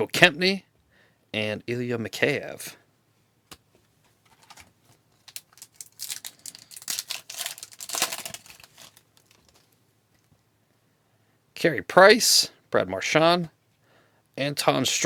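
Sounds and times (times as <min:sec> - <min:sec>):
foil wrapper crinkling and tearing: 0:04.3 - 0:09.8.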